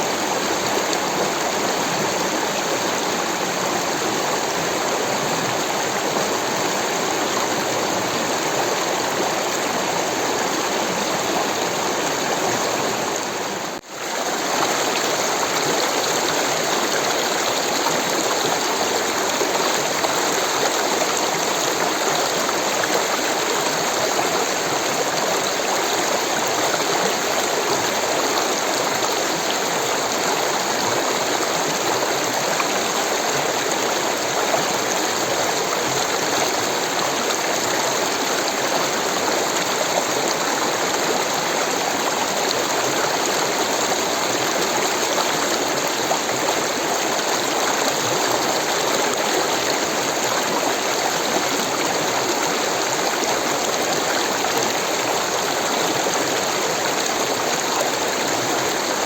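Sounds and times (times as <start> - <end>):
stream water rushing: 0.0 - 59.0.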